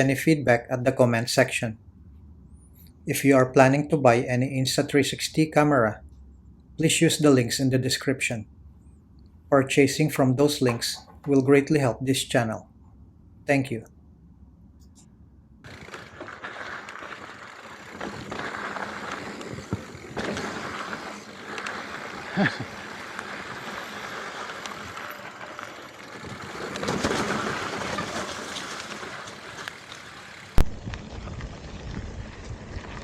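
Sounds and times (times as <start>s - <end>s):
bicycle tyre noise on trail: 15.6s - 33.0s
bike rattles and knocks: 15.7s - 33.0s
wind noise: 30.6s - 33.0s.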